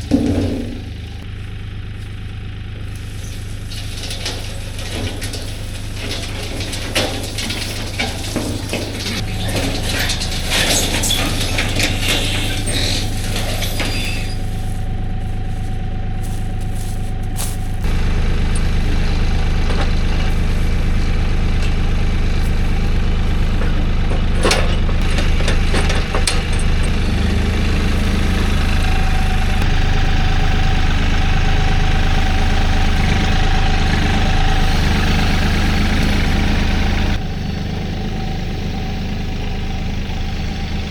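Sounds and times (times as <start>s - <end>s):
clattering knocks and clicks: 0.0s - 1.3s, 2.7s - 29.8s
engine running: 0.0s - 40.9s.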